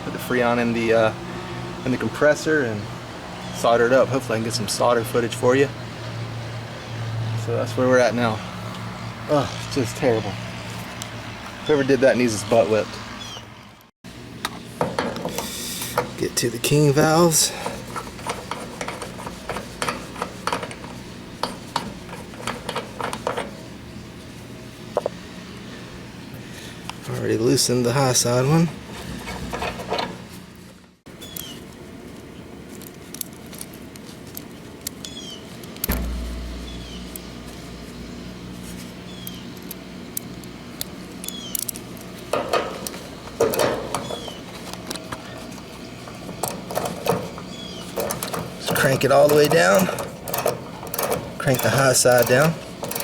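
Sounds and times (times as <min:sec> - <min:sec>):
steady low hum: 0:35.8 - 0:43.4
tools clicking on metal valves: 0:46.4 - 0:53.0.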